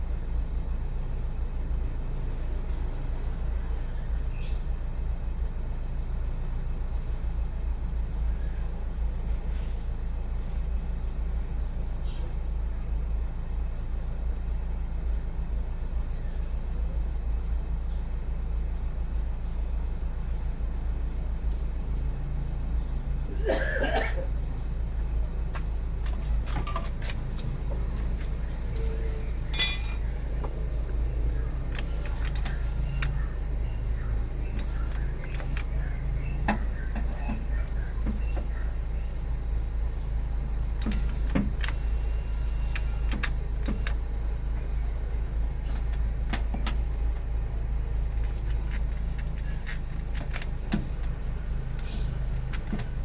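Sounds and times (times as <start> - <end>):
steady low hum: 0.0 - 53.0
small metallic clicks and clinks: 28.5 - 30.2.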